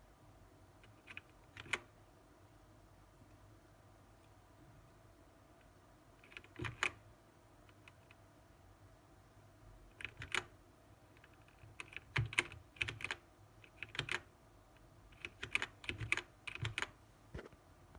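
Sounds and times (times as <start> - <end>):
mechanical keyboard key clicks: 10.0 - 10.5, 11.2 - 14.3, 15.2 - 17.0.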